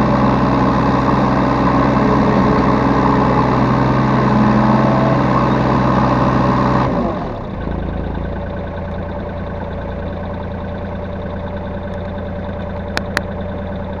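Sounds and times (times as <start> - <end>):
diesel excavator engine idling: 0.0 - 14.0
sharp clicks: 11.8 - 13.6.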